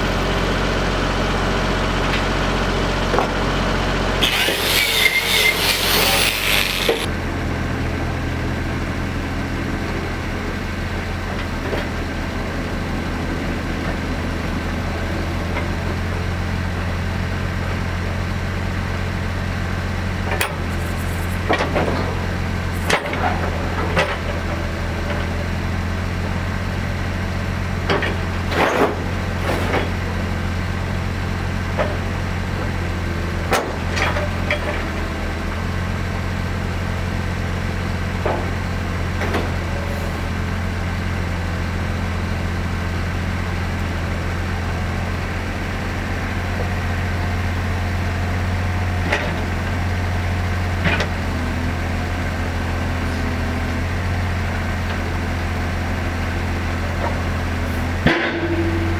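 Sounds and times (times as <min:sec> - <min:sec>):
loud hissing crackle: 0:04.2 - 0:07.1.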